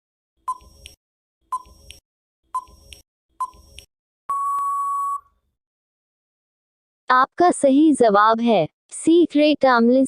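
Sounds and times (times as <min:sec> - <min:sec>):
short timer beeps with tick: 0:02.6 - 0:05.3
long steady beep: 0:04.3 - 0:05.3.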